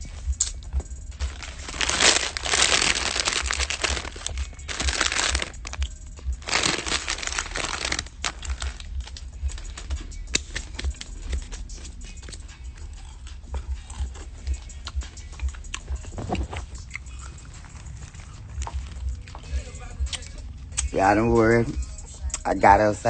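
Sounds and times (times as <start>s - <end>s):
plastic bag crinkling: 1.2s - 11.0s.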